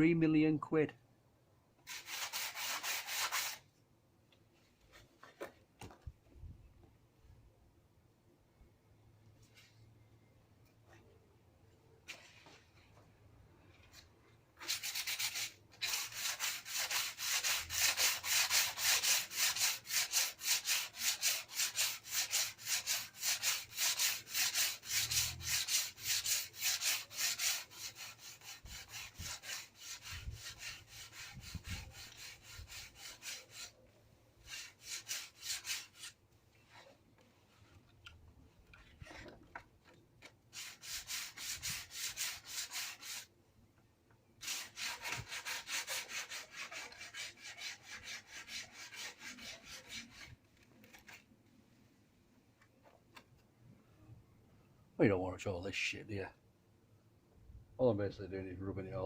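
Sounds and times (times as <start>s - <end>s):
sandpaper scraping bodywork: 1.8s - 3.6s, 14.6s - 37.0s, 40.5s - 43.3s, 44.4s - 51.2s.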